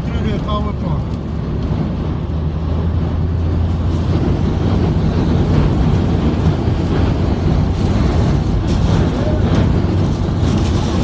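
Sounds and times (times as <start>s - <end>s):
wind rushing: 0.0s - 11.0s
heavy rain on car: 3.3s - 11.0s.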